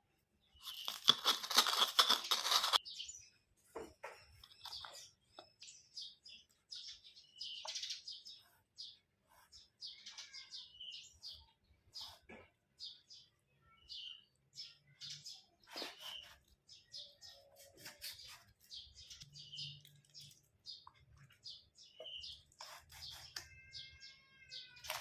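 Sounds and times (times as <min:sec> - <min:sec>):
small birds chirping: 0:00.2 - 0:25.0.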